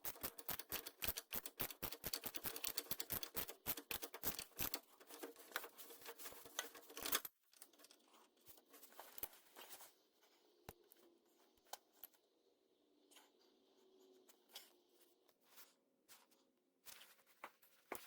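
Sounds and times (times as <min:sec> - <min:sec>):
rustling and crinkling: 0:04.7 - 0:12.2, 0:13.1 - 0:18.0.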